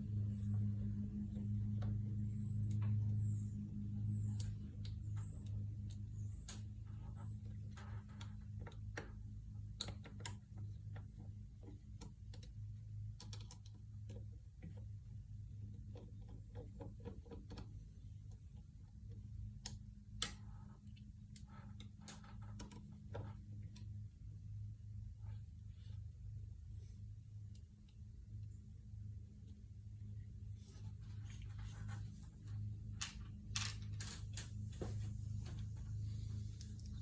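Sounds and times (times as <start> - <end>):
steady low hum: 0.0 - 37.0
light clicks and taps: 0.5 - 15.0, 15.6 - 24.2.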